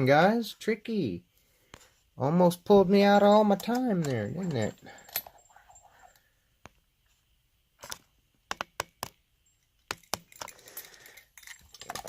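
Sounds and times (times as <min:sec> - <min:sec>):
small hard objects clicking: 0:09.8 - 0:12.0.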